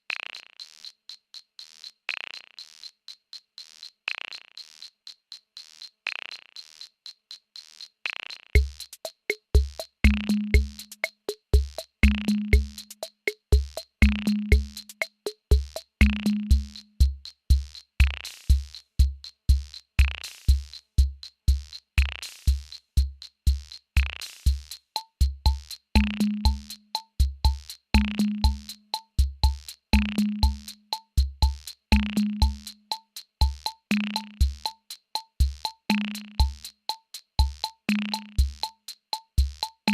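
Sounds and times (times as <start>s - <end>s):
ticking hi-hat: 0.0s - 39.9s
deep kick drums: 8.6s - 8.8s, 9.5s - 10.8s, 11.6s - 12.8s, 13.5s - 14.8s.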